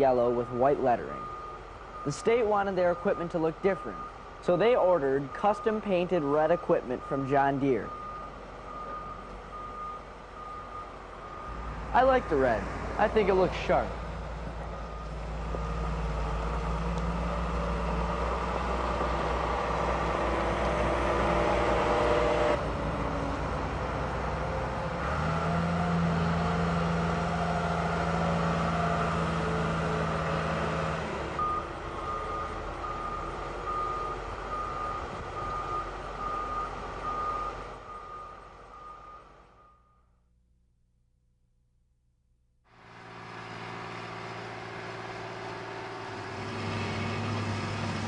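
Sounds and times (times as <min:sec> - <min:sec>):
construction machinery diesel engines: 0:00.0 - 0:39.8, 0:42.7 - 0:48.0
backup alarm beeping: 0:01.0 - 0:02.2, 0:05.2 - 0:12.7, 0:31.4 - 0:40.2.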